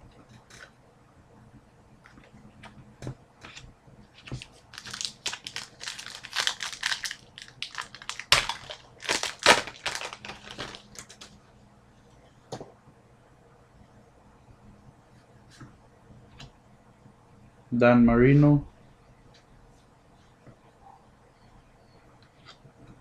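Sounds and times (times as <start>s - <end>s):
trading cards crinkling and rustling: 3.4s - 11.4s.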